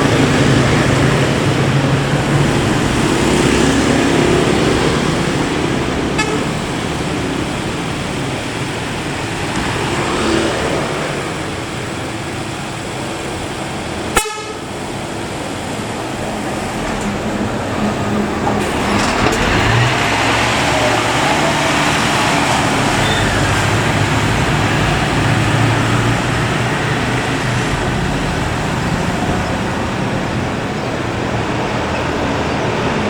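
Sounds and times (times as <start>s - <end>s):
bus engine and road noise: 0.0s - 33.0s
multi-tone air horn: 6.2s - 6.6s, 14.1s - 14.7s.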